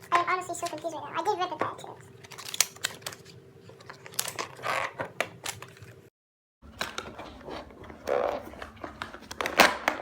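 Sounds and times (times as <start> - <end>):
packaging clicks and rustles: 2.2 - 6.0.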